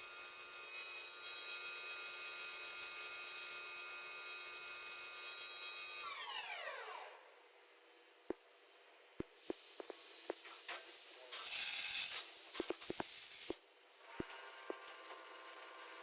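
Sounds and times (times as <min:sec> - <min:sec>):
machine spindle whine: 0:09.4 - 0:13.6.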